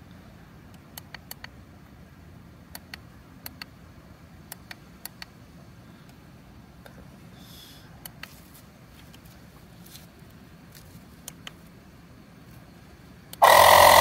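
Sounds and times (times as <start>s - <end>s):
short high beep: 13.4s - 14.0s.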